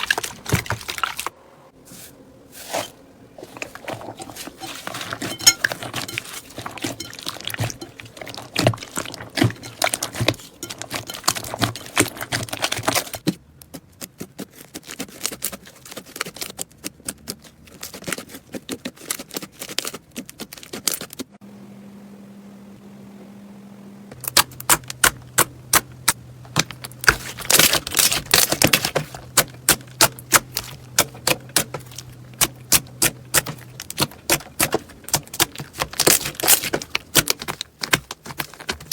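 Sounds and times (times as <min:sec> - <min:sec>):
low steady hum: 0:00.0 - 0:13.2, 0:21.4 - 0:38.9.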